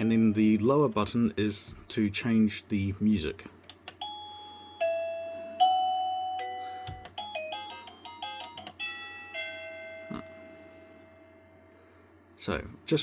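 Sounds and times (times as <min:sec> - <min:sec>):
doorbell electronic chime tunes: 0:04.0 - 0:11.6.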